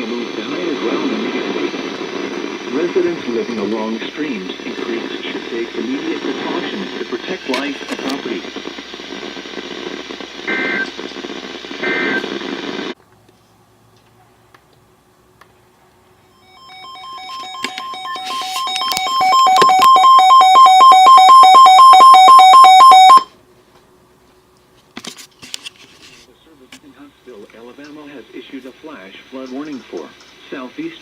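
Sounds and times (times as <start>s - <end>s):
pulsing two-pitch alarm beep: 16.4s - 23.3s.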